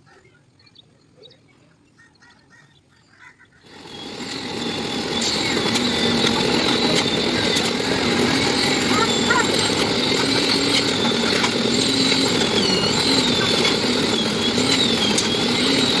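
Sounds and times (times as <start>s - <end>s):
engine-driven machine running: 3.7s - 16.0s.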